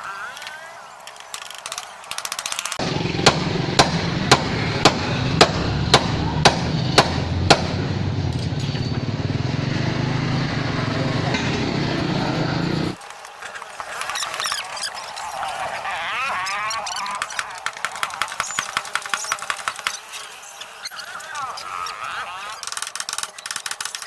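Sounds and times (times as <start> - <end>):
hammer blows: 1.0 - 9.1
low machine drone: 2.8 - 13.0.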